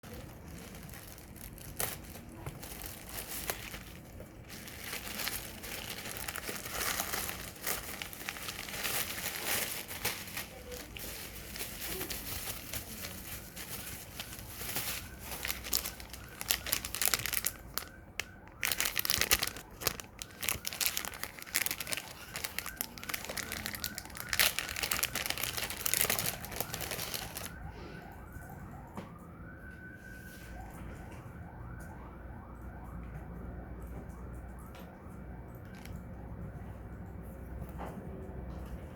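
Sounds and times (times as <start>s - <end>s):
packaging crinkling and tearing: 0.0s - 27.6s, 35.6s - 36.0s
rising siren-like tone: 25.7s - 35.5s.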